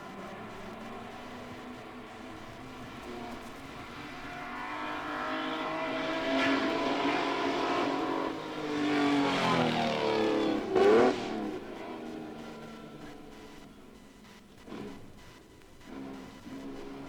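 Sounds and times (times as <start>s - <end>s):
racing car engine passing by: 0.0s - 13.6s.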